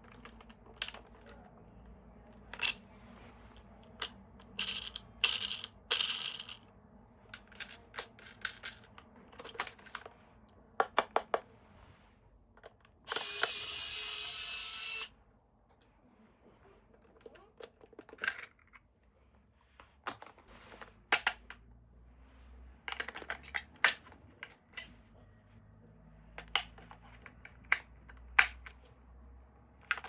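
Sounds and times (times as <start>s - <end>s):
plastic parts clicking and tapping: 0.0s - 1.5s, 2.3s - 2.9s, 3.6s - 6.7s, 7.3s - 11.5s, 17.0s - 18.8s, 20.0s - 21.6s, 22.8s - 24.9s, 26.4s - 28.9s, 29.8s - 30.0s.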